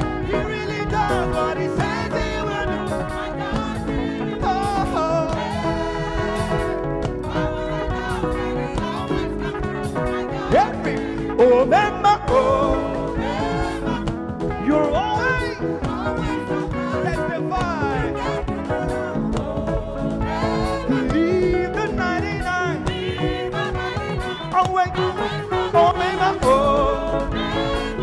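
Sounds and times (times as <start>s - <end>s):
band playing worship music: 0.0s - 28.0s
person singing: 0.0s - 28.0s.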